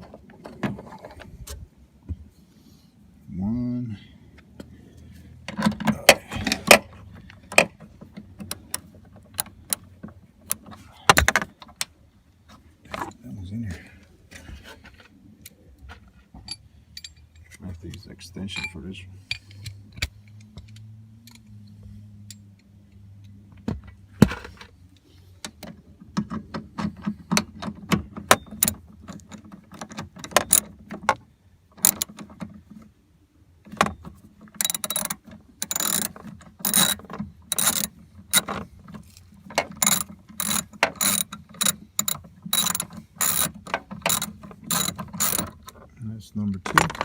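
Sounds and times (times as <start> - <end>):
ratchet pawl clicking: 34.6 - 38.5, 39.8 - 45.5
sharp metal ticks: 34.6 - 38.5, 39.8 - 45.5.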